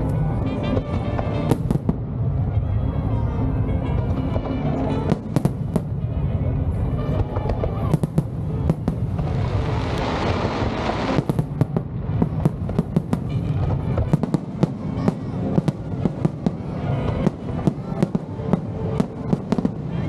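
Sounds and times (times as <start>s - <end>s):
fireworks bangs: 4.3s - 20.0s
fireworks hissing crackle: 6.7s - 20.0s.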